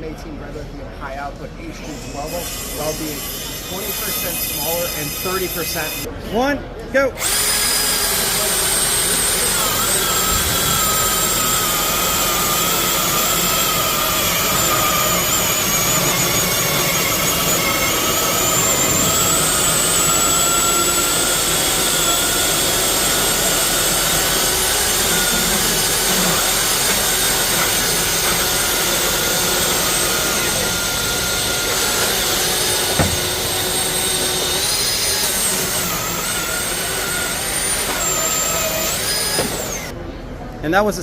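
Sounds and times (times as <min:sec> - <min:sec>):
chainsaws cutting wood: 0:07.2 - 0:39.9.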